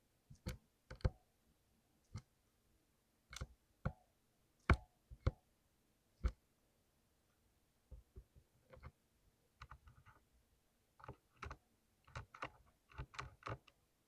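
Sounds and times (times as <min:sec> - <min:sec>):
mechanical keyboard keystroke clicks: 0:11.0 - 0:13.8.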